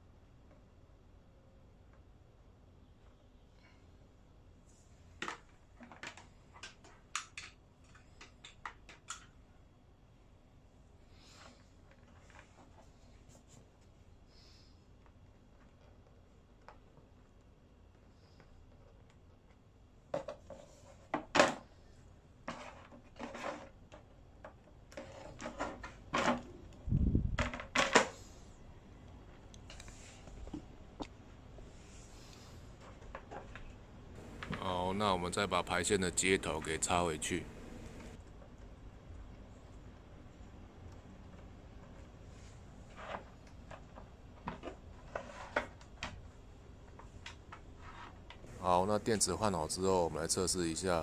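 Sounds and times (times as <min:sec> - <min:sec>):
plastic parts clicking and knocking: 0:05.2 - 0:09.4.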